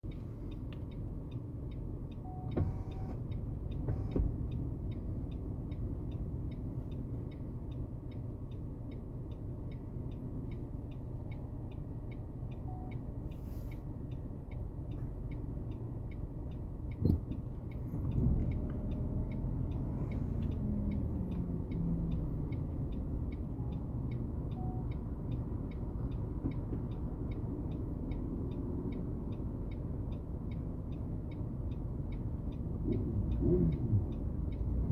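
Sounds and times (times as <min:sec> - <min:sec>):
car engine idling: 0:00.0 - 0:34.9
faint regular ticks: 0:00.1 - 0:34.9.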